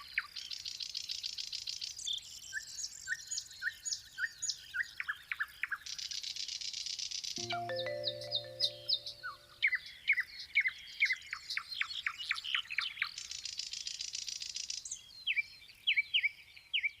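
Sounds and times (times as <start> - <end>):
songbird chirping: 7.4 - 9.5.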